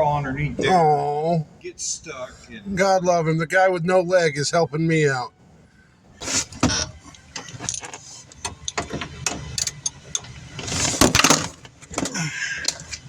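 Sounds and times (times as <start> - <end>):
tools clattering: 6.2 - 13.0.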